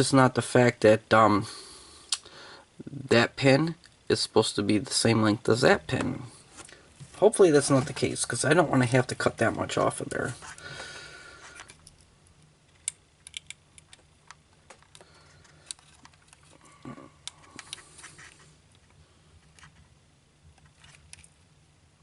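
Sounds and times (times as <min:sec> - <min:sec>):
plastic parts clicking together: 0:12.7 - 0:16.6.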